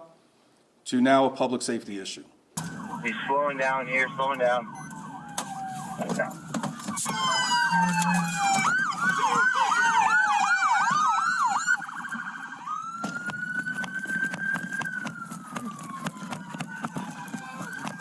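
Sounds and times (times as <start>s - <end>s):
police siren wail: 2.6s - 18.0s
police siren yelp: 2.6s - 18.0s
vehicle rumble: 4.6s - 10.2s.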